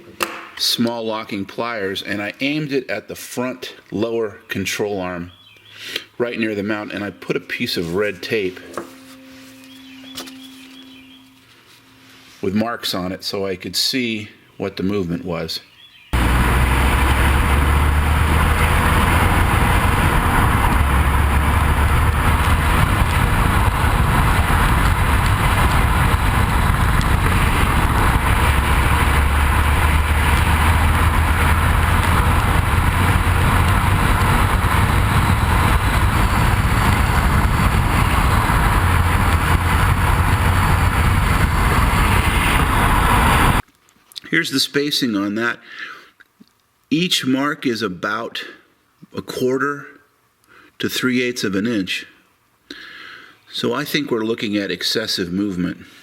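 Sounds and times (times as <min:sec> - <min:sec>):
road and wind noise: 0:16.1 - 0:43.6
low car rumble: 0:16.2 - 0:43.6.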